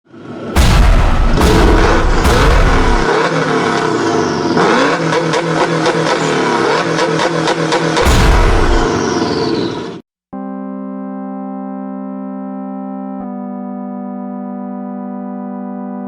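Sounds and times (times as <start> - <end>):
car engine revving: 0.1 - 9.9
deep boom: 0.6 - 3.1, 8.0 - 9.2.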